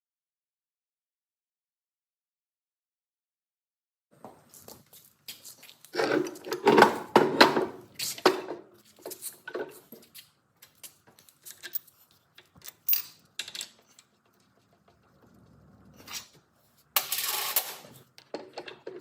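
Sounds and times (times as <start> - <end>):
metal tools clinking and clattering: 11.3 - 14.1.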